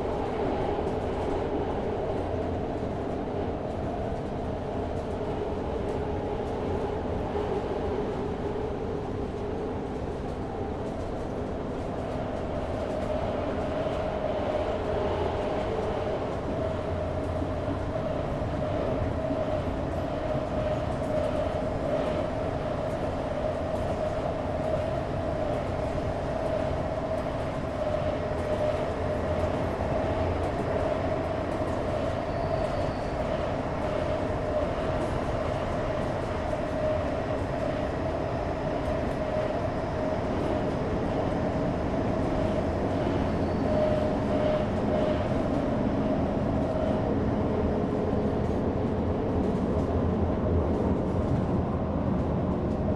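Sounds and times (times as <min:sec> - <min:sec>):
train wheels rumbling on rails: 0:00.0 - 0:52.9.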